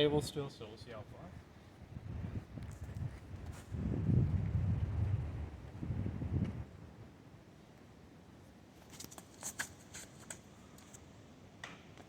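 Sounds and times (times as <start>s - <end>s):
gusting wind buffeting microphone: 0.9s - 7.0s.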